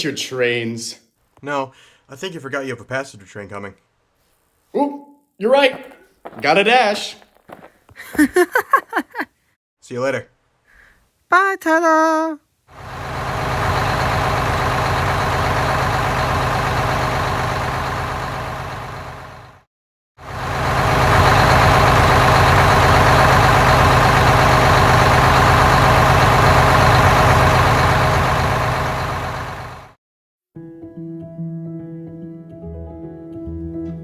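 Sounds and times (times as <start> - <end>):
heavy diesel engine running: 12.7 - 30.0.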